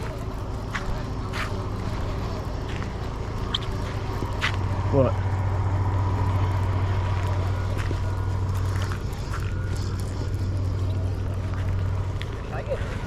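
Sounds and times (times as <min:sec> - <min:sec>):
low engine hum: 0:00.0 - 0:13.0.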